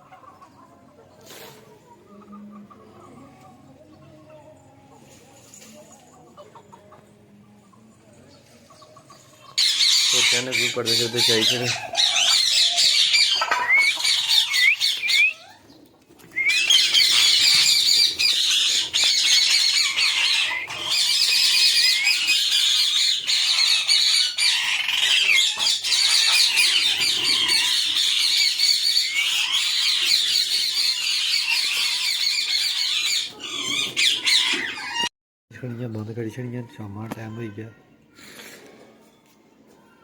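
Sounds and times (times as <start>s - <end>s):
parrots chattering and squawking: 9.6s - 15.8s, 16.4s - 35.1s.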